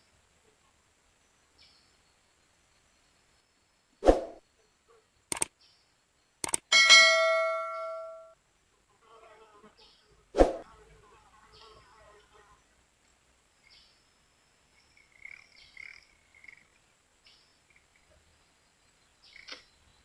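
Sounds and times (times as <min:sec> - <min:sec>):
sharp clicks: 0:05.3 - 0:05.6, 0:06.4 - 0:06.7
metallic ding ringing: 0:06.7 - 0:08.4.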